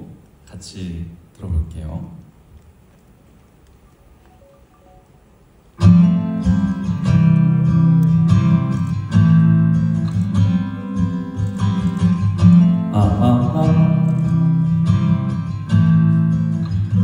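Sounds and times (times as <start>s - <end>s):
acoustic guitar ballad: 4.1s - 17.0s.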